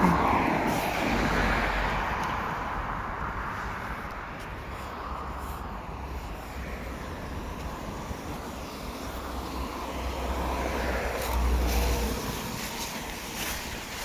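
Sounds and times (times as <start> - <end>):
passing traffic rumble: 0.0 - 14.0
wind buffeting the microphone: 0.0 - 14.0.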